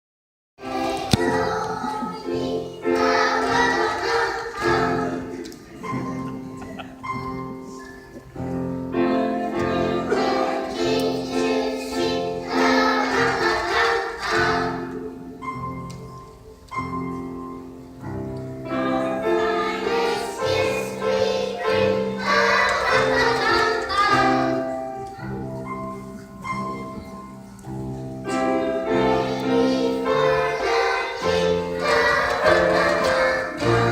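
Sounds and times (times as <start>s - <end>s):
choir singing: 0.6s - 6.3s, 9.0s - 15.2s, 18.6s - 24.8s, 28.6s - 33.9s.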